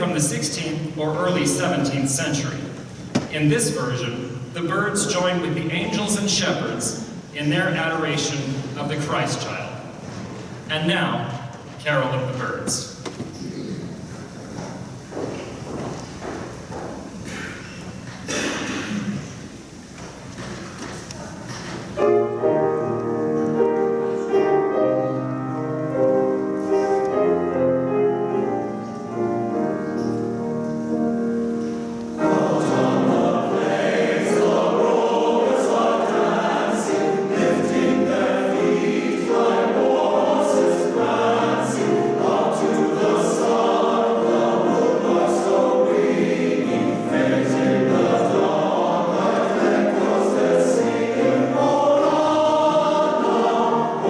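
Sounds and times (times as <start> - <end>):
men's chorus singing a carol: 0.0 - 9.8, 31.8 - 54.0.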